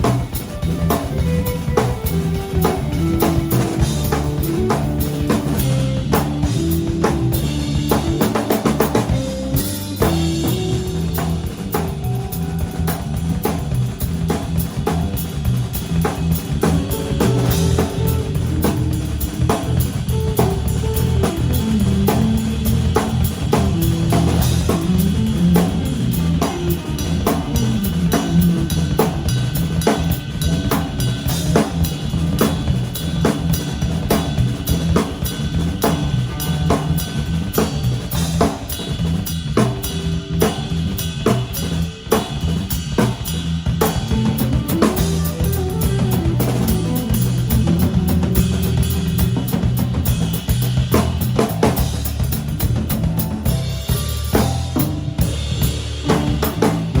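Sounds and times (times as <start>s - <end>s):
drum hits: 0.0s - 57.0s
live band instrumental groove: 0.0s - 57.0s.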